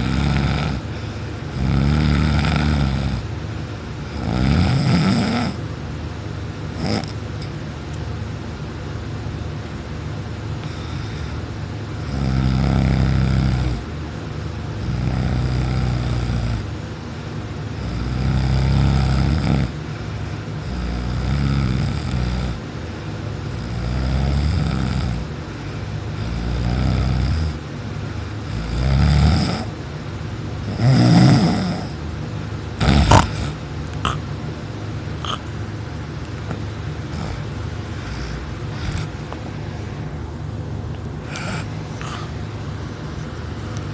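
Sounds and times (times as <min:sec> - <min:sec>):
person snoring loudly: 0:00.0 - 0:03.3, 0:04.1 - 0:05.6, 0:06.8 - 0:07.2, 0:12.0 - 0:13.8, 0:14.8 - 0:16.7, 0:17.8 - 0:19.8, 0:20.6 - 0:22.6, 0:23.5 - 0:25.3, 0:26.2 - 0:27.6, 0:28.4 - 0:29.7, 0:30.6 - 0:32.0, 0:32.8 - 0:34.2, 0:35.2 - 0:35.6, 0:37.1 - 0:39.2, 0:41.2 - 0:42.4.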